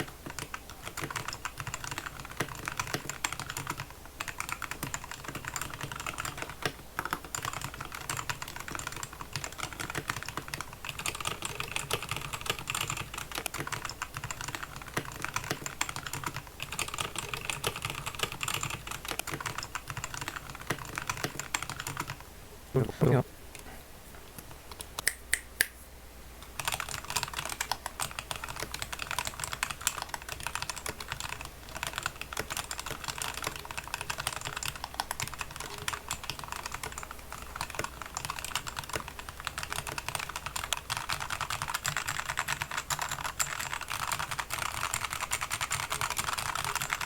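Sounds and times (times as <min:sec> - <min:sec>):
mechanical keyboard typing: 0:00.0 - 0:22.2, 0:26.6 - 0:47.0.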